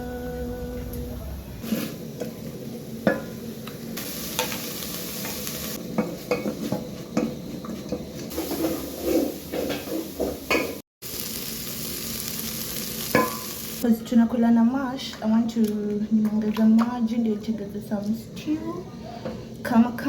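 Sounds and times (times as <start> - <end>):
food sizzling in a pot: 1.6 - 7.4, 8.3 - 13.8.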